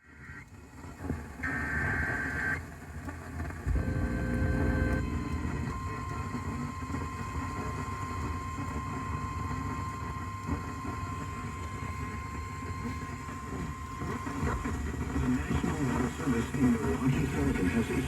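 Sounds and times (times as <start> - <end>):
radio reception noise rumble: 1.0 - 18.0
steady emergency alert tone: 3.7 - 16.5.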